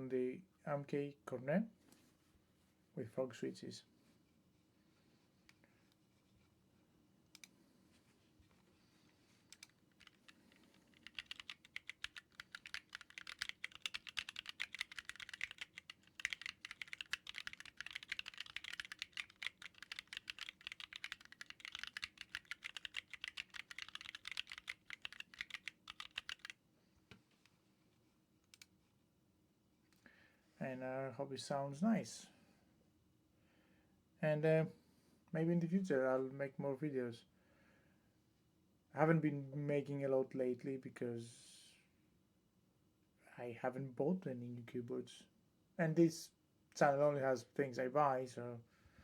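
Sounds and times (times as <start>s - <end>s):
mechanical keyboard typing: 9.5s - 26.6s.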